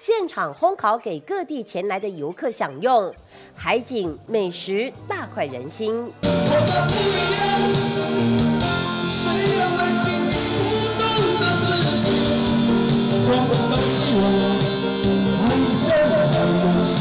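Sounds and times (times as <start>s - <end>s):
rock song with singing: 6.2s - 17.0s.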